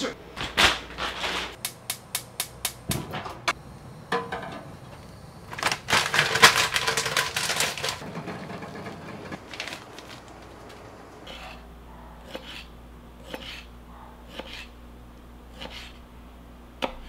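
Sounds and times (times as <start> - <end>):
crackling and rustling: 4.8 - 11.4.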